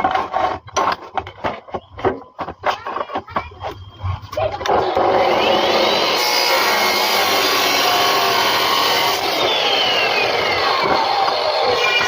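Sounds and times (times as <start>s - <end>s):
disc grinding through iron: 4.7s - 12.0s
disc cutter motor whine: 4.8s - 12.0s.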